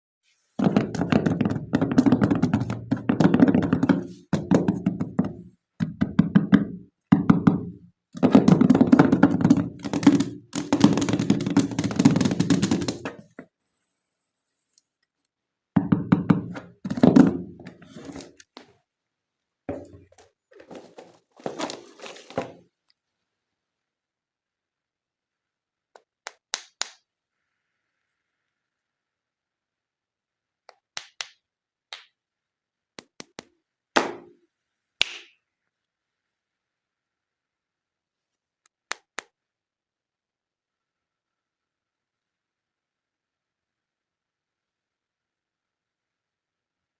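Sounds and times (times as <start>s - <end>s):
toy figures knocking and rattling: 0.6s - 13.5s, 15.8s - 18.6s.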